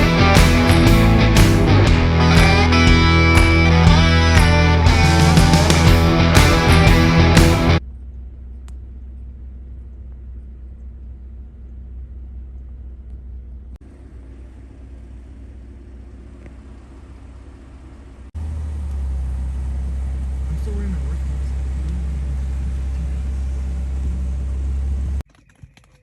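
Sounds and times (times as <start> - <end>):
rock music: 0.0 - 7.8
vehicle rumbling on the move: 0.0 - 25.2.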